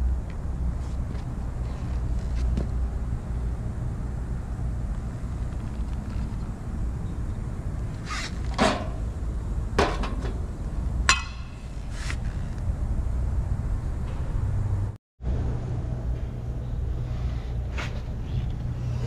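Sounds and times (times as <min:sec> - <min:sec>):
metal tools clanking: 0:11.1 - 0:11.8.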